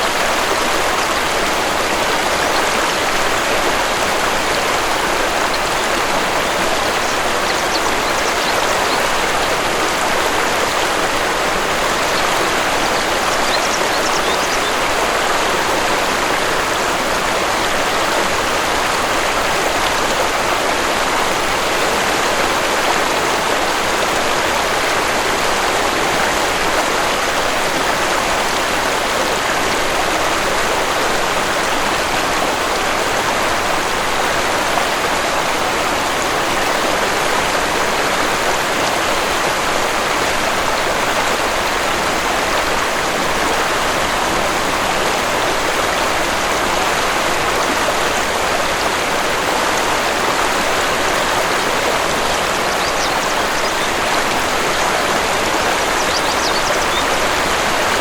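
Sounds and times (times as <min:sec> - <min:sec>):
waterfall rushing: 0:00.0 - 0:58.0
faint bird chirps: 0:52.7 - 0:54.0, 0:56.0 - 0:57.1.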